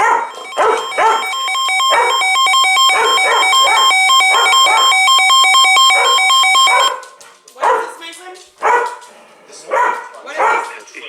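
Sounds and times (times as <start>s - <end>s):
electronic alert tones beeping: 0.3s - 7.0s.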